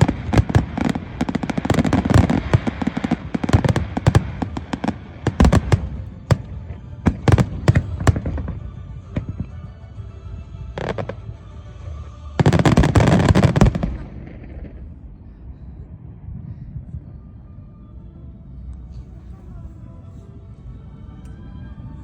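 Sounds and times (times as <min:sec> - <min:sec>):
crackling firework barrage: 0:00.0 - 0:09.7, 0:10.7 - 0:11.4, 0:12.0 - 0:15.8
low rumble: 0:00.0 - 0:22.0.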